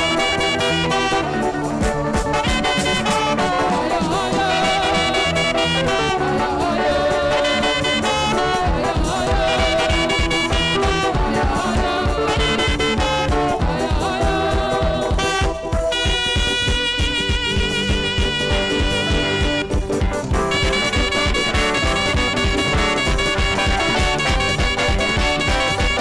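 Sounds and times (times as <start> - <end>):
gospel band music: 0.0 - 26.0
saxophone lead: 0.0 - 26.0
fast dense drum beat: 8.5 - 26.0.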